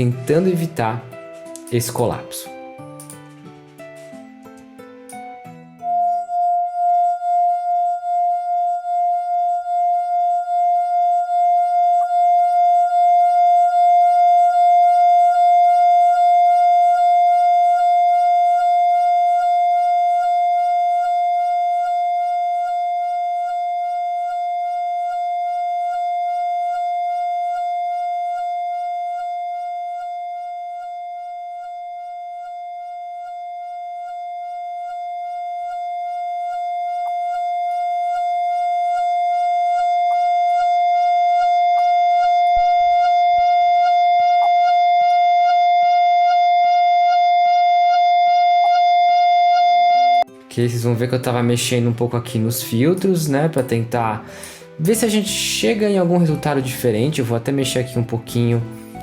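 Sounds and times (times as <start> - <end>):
wine glass ringing drone: 5.1 - 50.5.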